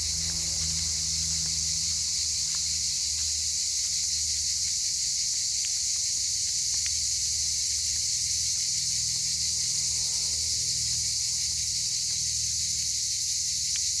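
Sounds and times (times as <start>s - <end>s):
low rumble: 0.0s - 2.6s.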